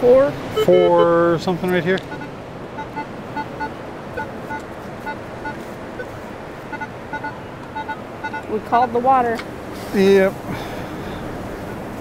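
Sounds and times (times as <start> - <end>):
metal detector beeps: 0.6 - 1.1, 2.1 - 6.1, 6.7 - 8.6.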